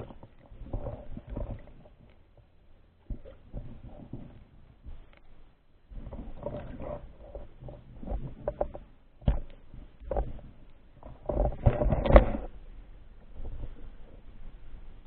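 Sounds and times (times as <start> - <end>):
water sloshing and splashing: 0.0 - 14.6.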